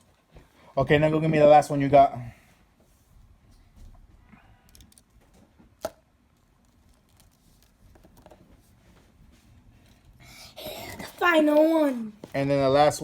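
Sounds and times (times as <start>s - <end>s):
rustling handling noise: 2.6s - 10.2s.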